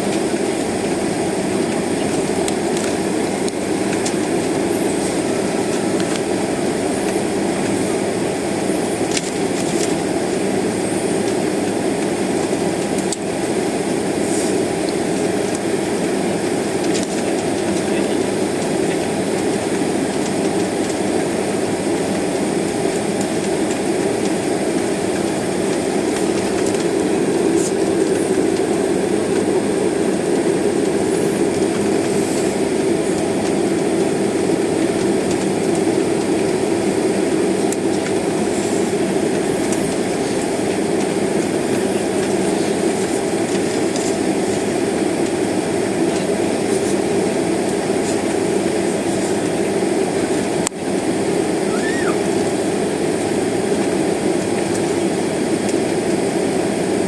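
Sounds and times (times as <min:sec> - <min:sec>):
jet engines at low thrust: 0:00.0 - 0:57.0
wheels rolling: 0:23.2 - 0:50.7.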